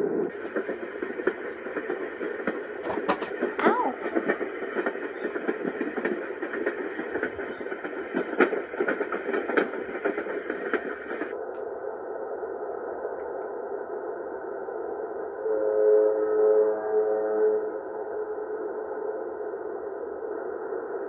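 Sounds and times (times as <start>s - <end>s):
crackly hiss with clicks: 0.2s - 12.2s.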